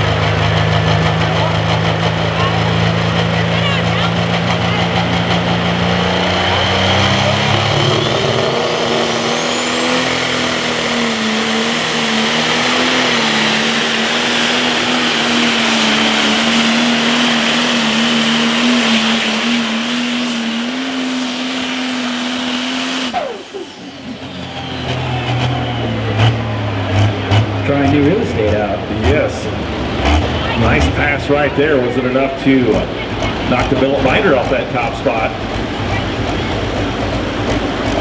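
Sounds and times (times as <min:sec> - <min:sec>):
diesel engine at full power: 0:00.0 - 0:38.0
turbo whine: 0:05.8 - 0:26.4.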